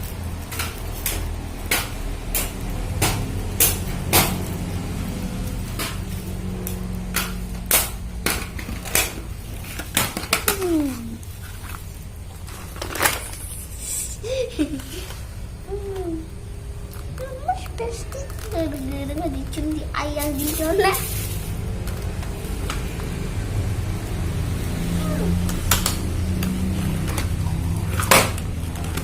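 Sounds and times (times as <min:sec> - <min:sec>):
sharp knocks and clatters: 0:00.2 - 0:10.8, 0:25.5 - 0:29.0.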